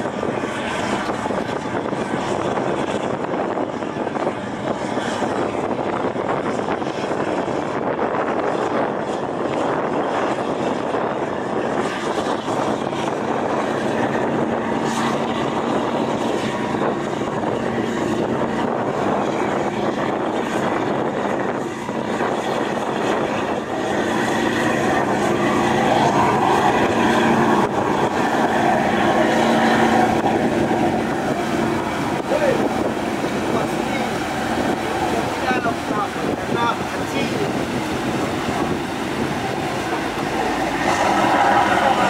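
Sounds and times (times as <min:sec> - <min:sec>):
rush of wind and water: 0:00.0 - 0:42.0
ferry engines droning: 0:11.8 - 0:42.0.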